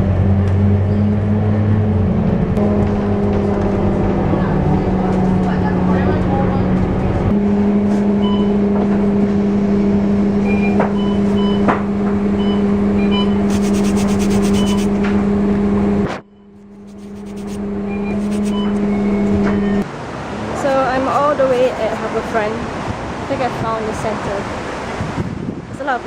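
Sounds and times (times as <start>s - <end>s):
vehicle hum: 0.0s - 25.0s
short high beeps: 13.2s - 14.9s, 16.2s - 19.1s.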